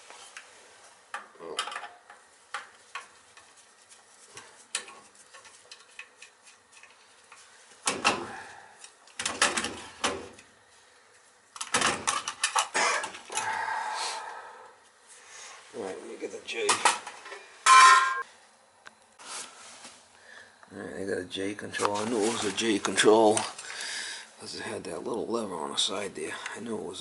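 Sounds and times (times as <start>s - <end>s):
metal tools clinking and clattering: 16.7s - 18.2s.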